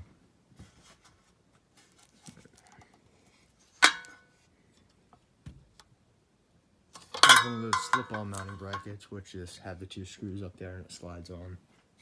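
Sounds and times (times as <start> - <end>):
handling clicks and rustles: 1.6 - 4.3, 7.0 - 8.9.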